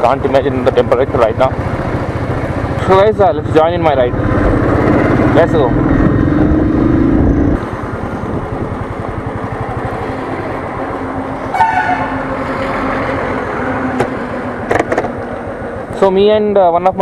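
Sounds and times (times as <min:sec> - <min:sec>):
motorcycle engine running: 0:00.0 - 0:12.6
road noise: 0:00.0 - 0:17.0
vehicle horn: 0:11.5 - 0:12.3.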